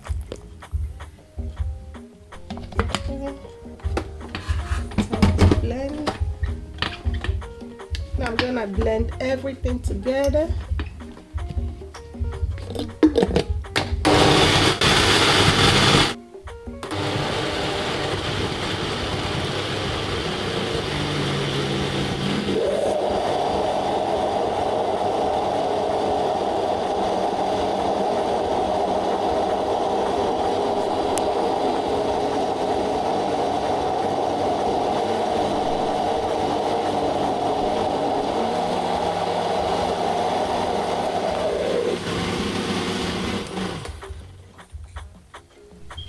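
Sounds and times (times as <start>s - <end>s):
electric blender motor running: 13.8s - 16.2s, 16.8s - 44.3s.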